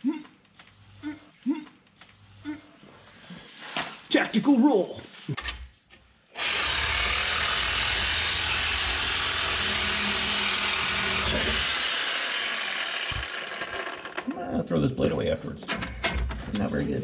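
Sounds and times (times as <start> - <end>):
reciprocating saw cutting metal pipe: 6.4 - 14.3.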